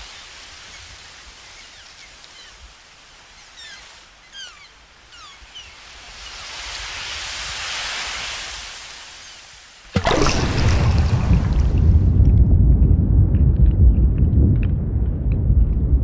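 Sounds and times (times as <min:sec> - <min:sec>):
bird-like chirps: 0:00.0 - 0:06.7
steady hiss: 0:00.0 - 0:10.0.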